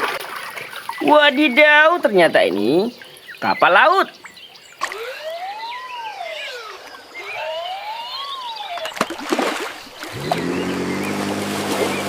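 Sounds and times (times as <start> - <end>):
water splashing: 0.0 - 12.0
siren wail: 4.8 - 11.2.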